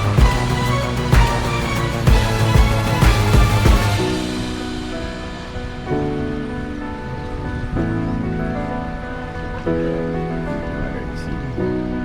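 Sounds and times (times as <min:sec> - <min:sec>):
drum beats: 0:00.0 - 0:06.2
held music chord: 0:00.0 - 0:12.0.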